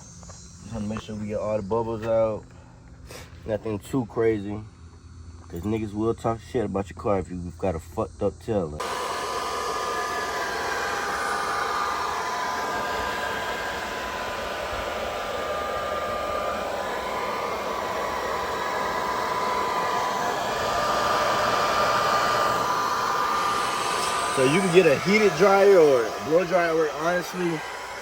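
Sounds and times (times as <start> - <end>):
blow dryer whining: 8.8 - 28.0.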